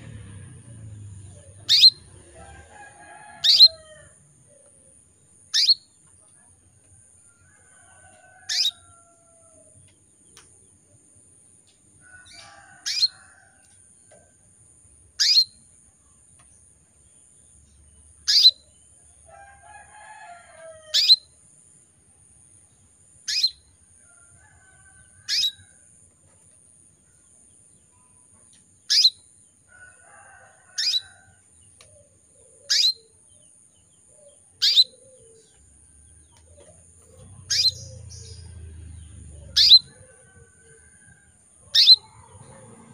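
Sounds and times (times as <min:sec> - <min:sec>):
canary call notes: 0:01.2 - 0:02.2, 0:03.4 - 0:03.9, 0:05.5 - 0:05.9, 0:08.4 - 0:08.9, 0:12.2 - 0:13.2, 0:15.2 - 0:15.6, 0:18.3 - 0:18.6, 0:20.9 - 0:21.3, 0:23.3 - 0:23.6, 0:25.3 - 0:25.6, 0:28.9 - 0:29.2, 0:30.8 - 0:31.1, 0:32.5 - 0:33.2, 0:34.6 - 0:35.5, 0:37.1 - 0:38.5, 0:39.5 - 0:39.9, 0:41.6 - 0:42.2.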